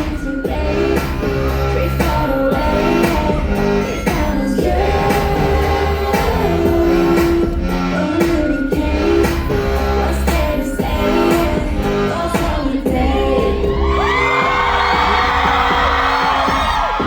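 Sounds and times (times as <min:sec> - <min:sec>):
woman singing: 0:00.0 - 0:14.4
live pop song over sound system: 0:00.0 - 0:17.0
audience screaming and cheering: 0:08.7 - 0:17.0.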